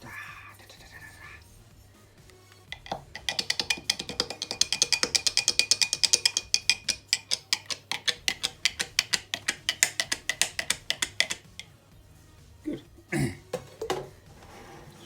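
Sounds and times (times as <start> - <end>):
spoon clinking in a mug: 2.7 - 11.7.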